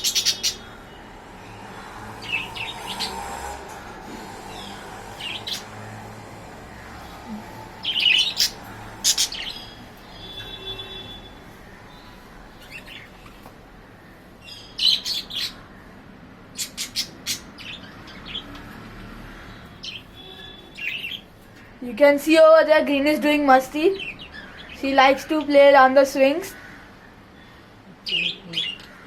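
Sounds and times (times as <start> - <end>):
budgerigars chirping: 0.0 - 0.7, 4.5 - 5.8, 7.8 - 10.6, 14.5 - 15.6, 16.6 - 18.6.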